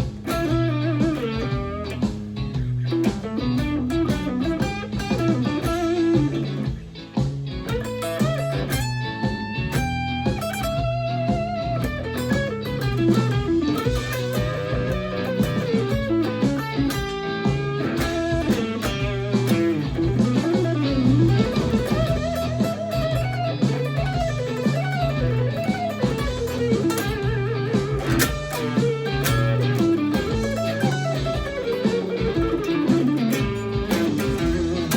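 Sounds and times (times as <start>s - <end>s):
electric guitar blues lead: 0.0s - 34.9s
low bass notes: 0.0s - 34.9s.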